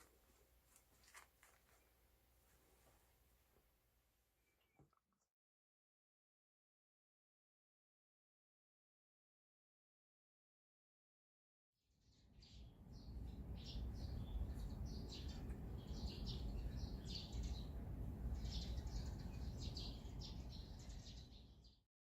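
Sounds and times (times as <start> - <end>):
small birds chirping: 12.1 - 21.8.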